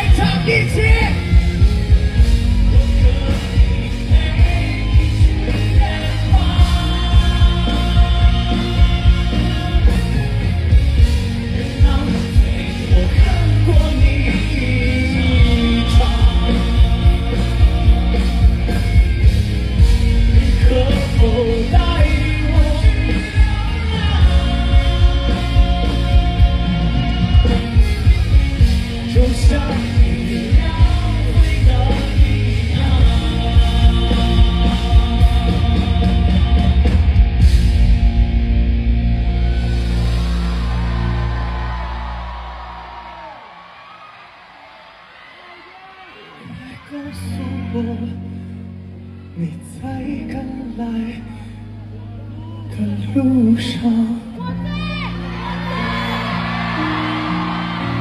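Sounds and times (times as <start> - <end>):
drum beat: 0.0 - 37.7
person singing: 0.0 - 38.0, 45.4 - 58.0
live band playing pop-rock: 0.0 - 43.6, 46.4 - 58.0.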